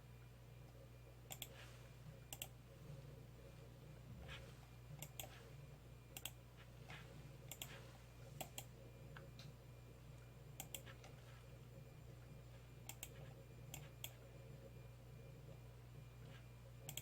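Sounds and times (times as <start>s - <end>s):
computer mouse clicks: 1.3s - 1.6s, 2.3s - 2.6s, 5.0s - 5.4s, 6.1s - 7.8s, 8.4s - 9.6s, 10.6s - 11.2s, 12.8s - 14.2s.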